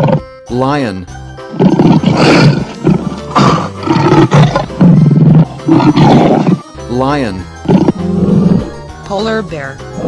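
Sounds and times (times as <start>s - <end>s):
lion roaring: 1.5s - 6.7s, 7.6s - 8.8s.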